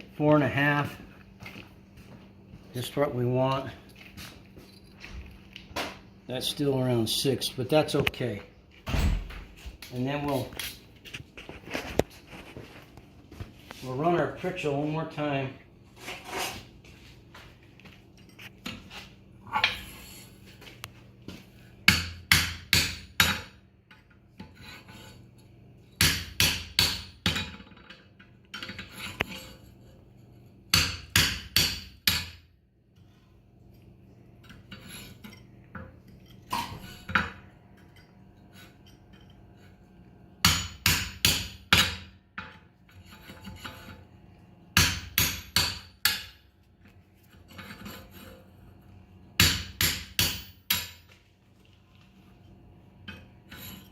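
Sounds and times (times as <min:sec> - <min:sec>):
hammer striking metal on anvil: 0:21.9 - 0:23.5, 0:26.0 - 0:27.6, 0:30.7 - 0:32.4, 0:40.4 - 0:42.5, 0:44.8 - 0:46.4, 0:49.4 - 0:51.1.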